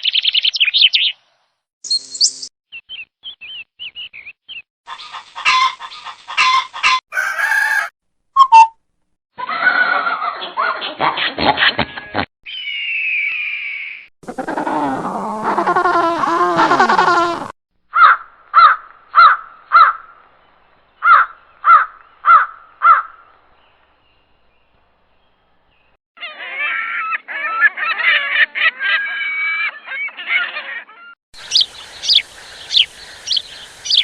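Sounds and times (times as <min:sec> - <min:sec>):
high-pitched bird calls: 0:12.5 - 0:15.9, 0:26.2 - 0:34.0.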